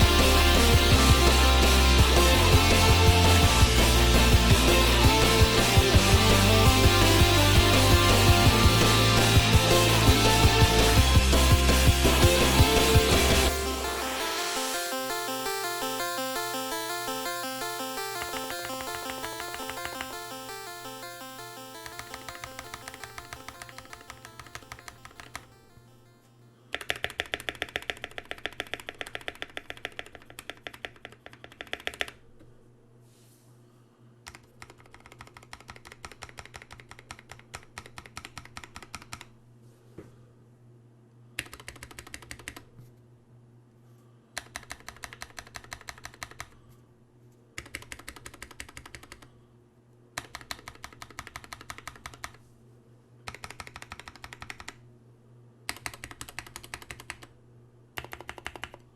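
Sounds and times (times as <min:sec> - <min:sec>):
mechanical keyboard typing: 0:18.0 - 0:25.6, 0:26.7 - 0:32.2, 0:34.3 - 0:39.3, 0:41.4 - 0:42.7, 0:44.4 - 0:46.6, 0:47.6 - 0:49.3, 0:50.2 - 0:52.4, 0:53.3 - 0:54.8, 0:55.7 - 0:57.3, 0:58.0 - 0:58.8.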